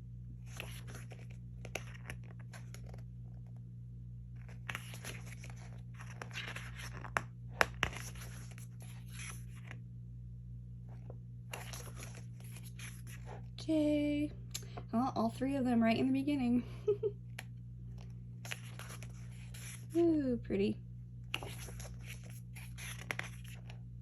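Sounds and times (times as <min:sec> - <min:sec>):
low hum: 0:00.0 - 0:24.0
paper pages rustling: 0:00.4 - 0:03.6, 0:04.4 - 0:09.8, 0:10.9 - 0:13.5, 0:17.9 - 0:20.0, 0:21.3 - 0:23.8.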